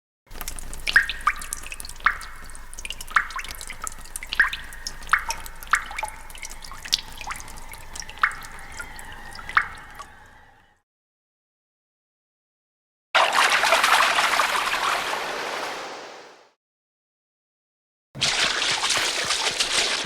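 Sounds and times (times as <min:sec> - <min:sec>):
water drops plinking: 0:00.3 - 0:10.4.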